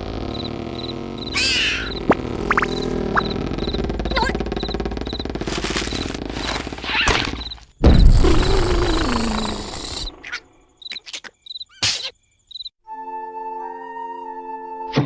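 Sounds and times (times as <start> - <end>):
cricket-like chirping: 0.2 - 12.8
cartoon crash with falling tone: 1.3 - 3.4, 6.4 - 10.1.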